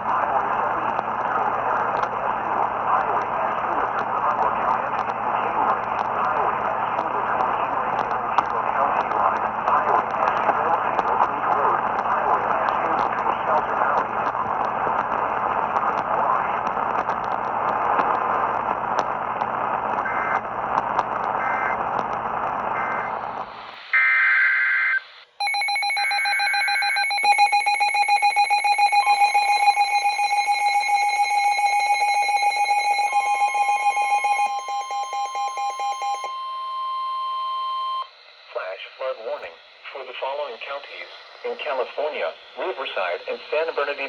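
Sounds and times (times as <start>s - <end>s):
radio static hiss: 0.0s - 24.2s, 38.2s - 44.0s
pulsing electronic alert tone: 25.4s - 36.3s
screeching data bursts: 25.4s - 36.3s.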